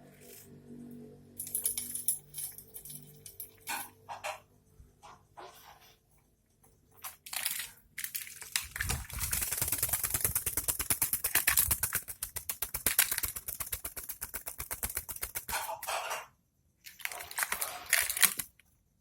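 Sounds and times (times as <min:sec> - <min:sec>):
parrot splashing in water: 0:08.4 - 0:13.7.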